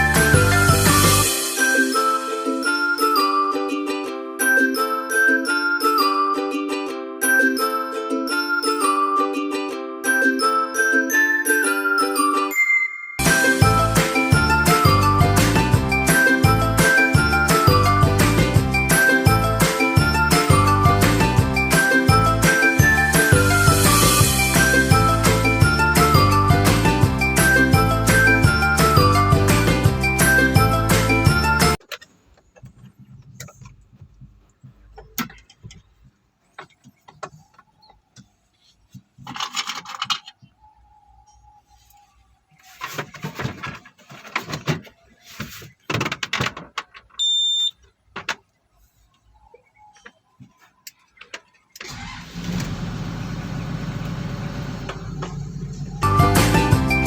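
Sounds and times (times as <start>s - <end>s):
short electronic beep: 47.2s - 47.8s
excavator engine running: 51.8s - 57.0s.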